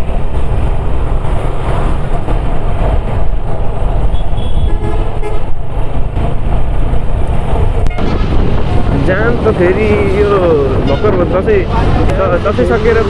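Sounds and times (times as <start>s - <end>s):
wind rumble on microphone: 0.0s - 12.2s
road traffic noise: 0.0s - 13.0s
vehicle horn honking: 4.1s - 5.5s, 10.8s - 11.3s.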